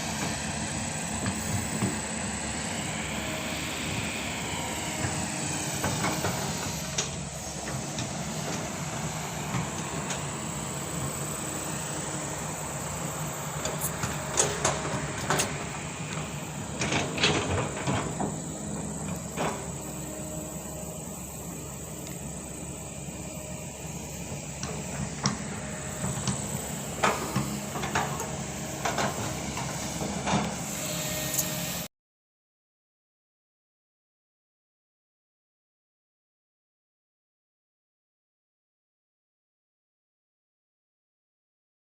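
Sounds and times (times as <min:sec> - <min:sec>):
diesel engine running: 0:00.0 - 0:31.9.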